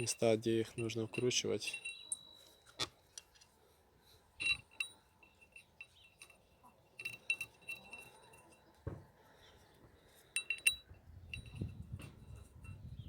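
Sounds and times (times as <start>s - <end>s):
metallic clinks of small bolts: 0.0s - 3.3s, 4.4s - 8.8s, 10.3s - 12.9s.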